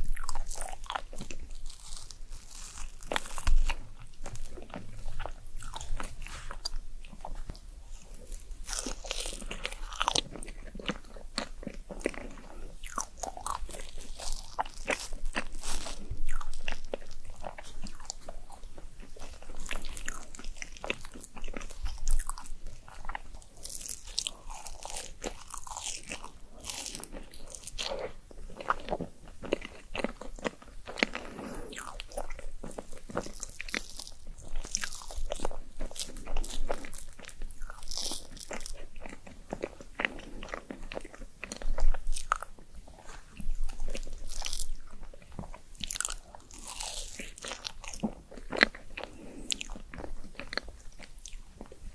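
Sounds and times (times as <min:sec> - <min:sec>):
person chewing crunchy food: 0:00.0 - 0:51.9.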